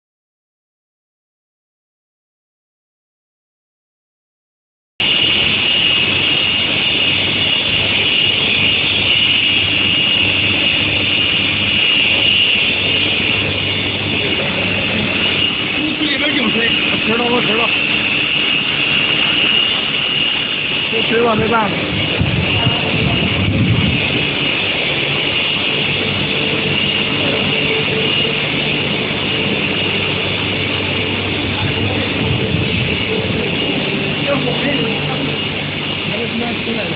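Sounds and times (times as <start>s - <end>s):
high-pitched machine whine: 5.0s - 36.9s.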